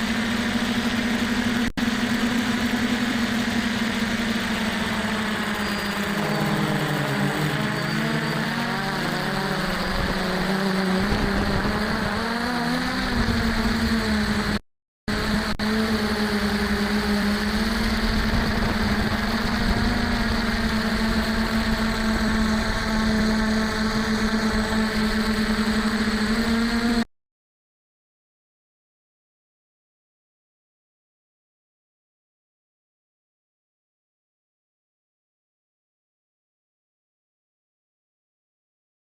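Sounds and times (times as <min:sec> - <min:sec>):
drone motors and propellers whining: 0:00.0 - 0:27.1.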